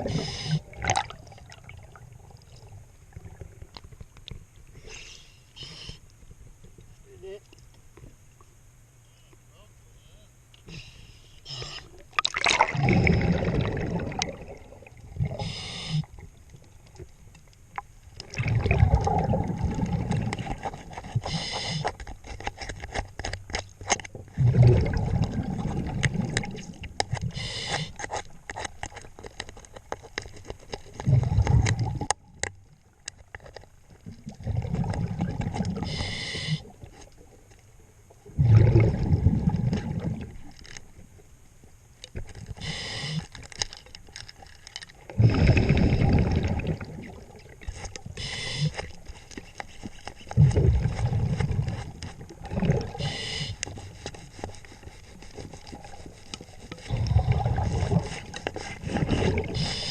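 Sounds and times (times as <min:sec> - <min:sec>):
diver breathing through regulator: 0:00.0 - 0:00.8, 0:15.2 - 0:16.2, 0:21.2 - 0:22.0, 0:27.2 - 0:28.1, 0:35.8 - 0:36.7, 0:42.6 - 0:43.4, 0:48.2 - 0:49.0, 0:52.9 - 0:59.9.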